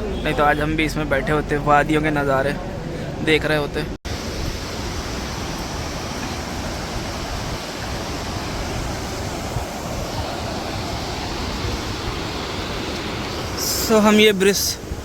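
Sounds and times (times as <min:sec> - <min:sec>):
mountain river rushing: 0:04.1 - 0:15.0.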